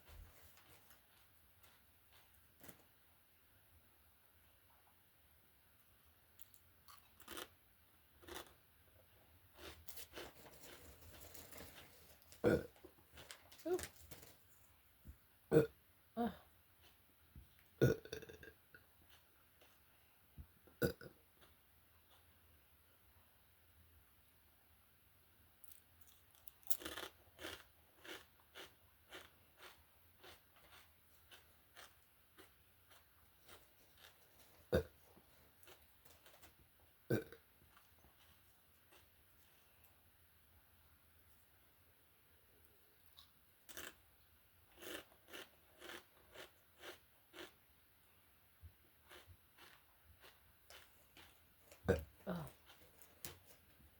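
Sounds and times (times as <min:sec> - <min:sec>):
potato chips crunching: 0:06.4 - 0:07.6, 0:08.2 - 0:08.6, 0:09.6 - 0:14.2, 0:25.7 - 0:34.5, 0:43.2 - 0:44.0, 0:44.7 - 0:47.6, 0:49.0 - 0:53.4.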